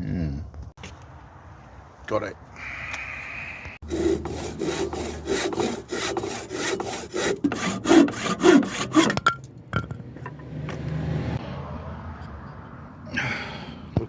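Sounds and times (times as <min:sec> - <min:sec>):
hand saw cutting wood: 0:03.8 - 0:09.2.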